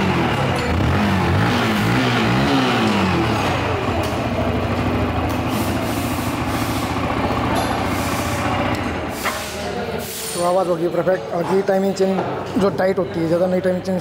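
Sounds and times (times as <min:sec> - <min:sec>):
motorcycle engine revving and idling: 0:00.0 - 0:09.6.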